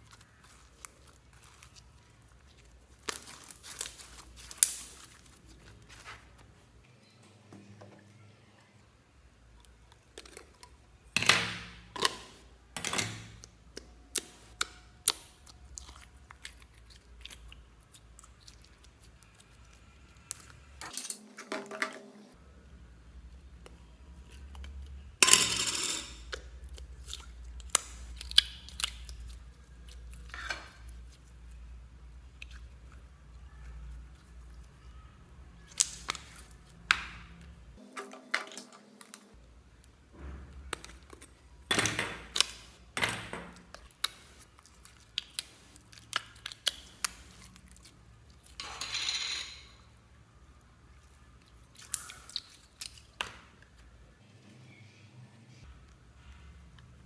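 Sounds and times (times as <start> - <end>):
slime squishing: 0.0 - 6.8, 9.4 - 20.8, 26.2 - 37.8, 38.5 - 48.6, 50.7 - 54.0.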